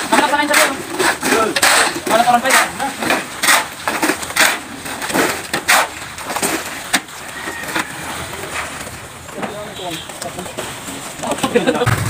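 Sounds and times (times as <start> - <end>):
hand tools scraping concrete: 0.0 - 8.9.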